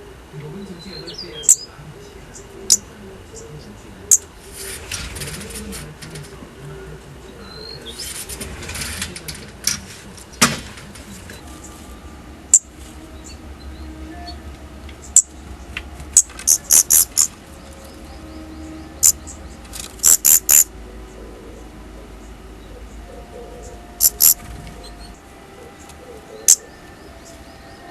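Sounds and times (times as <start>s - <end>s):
faint music: 0.0s - 27.9s
bird high-pitched calls: 0.7s - 3.5s, 11.4s - 27.9s.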